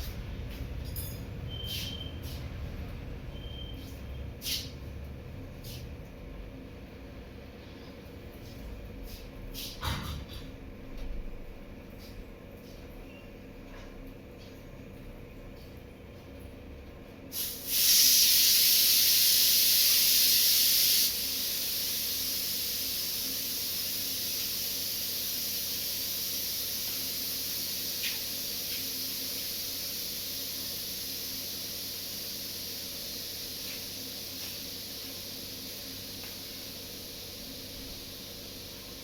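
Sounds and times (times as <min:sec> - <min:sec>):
steady hissing: 0:17.3 - 0:39.0.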